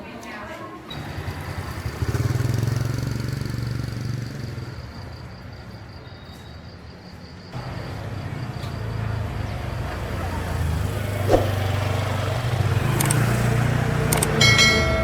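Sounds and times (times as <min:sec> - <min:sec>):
small motorbike engines: 0:01.0 - 0:05.1, 0:07.6 - 0:15.0.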